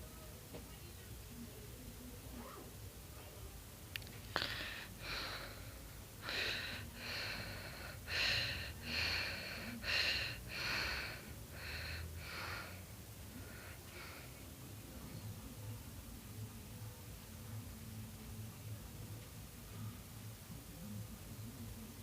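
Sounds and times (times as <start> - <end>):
breathing close to microphone: 4.3 - 14.5.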